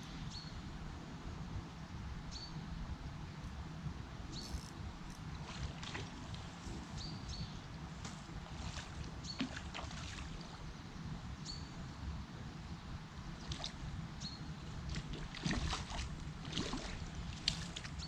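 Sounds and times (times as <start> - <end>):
water sloshing and splashing: 5.3 - 6.9, 7.9 - 10.6, 14.7 - 18.0.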